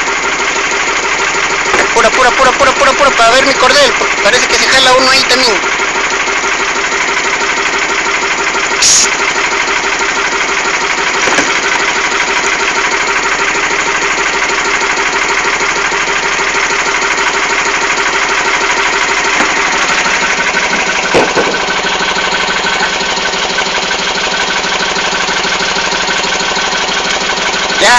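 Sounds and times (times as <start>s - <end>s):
boat engine idling: 0.0s - 27.9s
loud thump: 11.2s - 11.7s, 21.0s - 21.7s.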